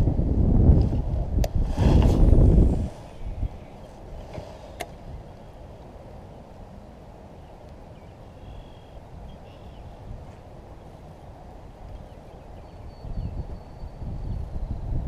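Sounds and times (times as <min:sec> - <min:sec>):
wind buffeting microphone: 0:00.0 - 0:08.3, 0:09.0 - 0:15.0
faint high chirp: 0:11.9 - 0:14.8.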